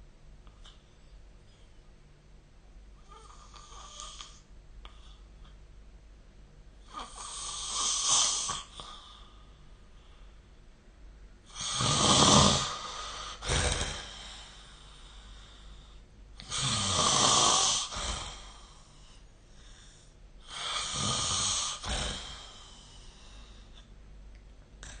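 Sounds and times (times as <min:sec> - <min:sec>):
person snoring: 0:06.9 - 0:09.0, 0:11.5 - 0:15.8, 0:16.4 - 0:23.6.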